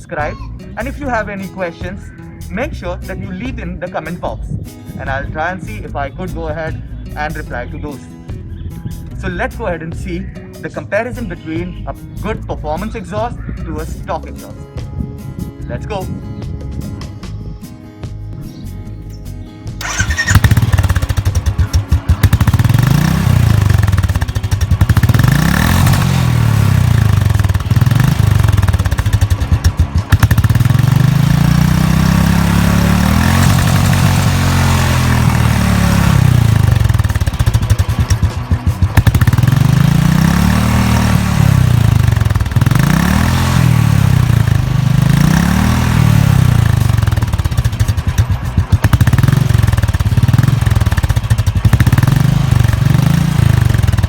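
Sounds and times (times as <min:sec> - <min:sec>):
motorcycle engine revving: 0:19.7 - 0:54.0.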